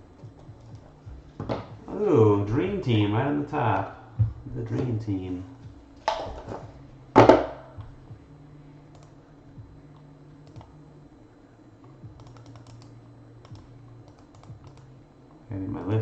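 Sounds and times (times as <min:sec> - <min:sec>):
faint low hum: 0:00.0 - 0:16.0
typing on computer keyboard: 0:12.2 - 0:14.9.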